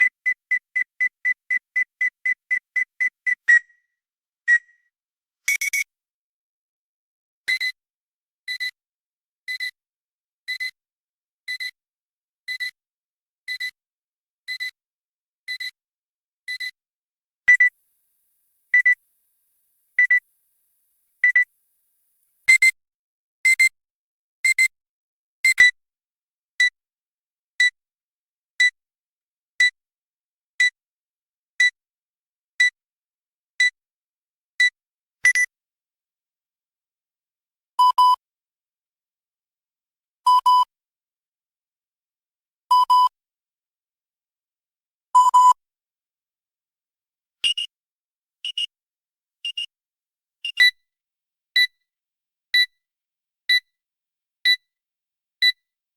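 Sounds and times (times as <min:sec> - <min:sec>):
high electronic beeps: 0:47.4 - 0:47.7, 0:48.5 - 0:48.7, 0:49.5 - 0:49.7.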